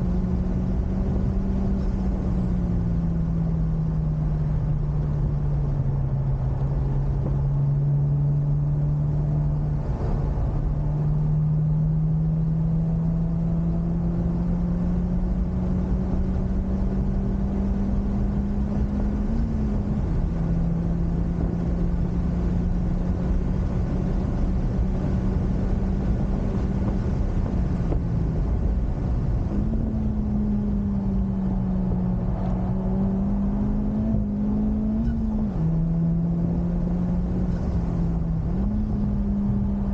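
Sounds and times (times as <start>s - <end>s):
car engine under load: 0.0s - 39.9s
road and wind noise: 0.0s - 39.9s.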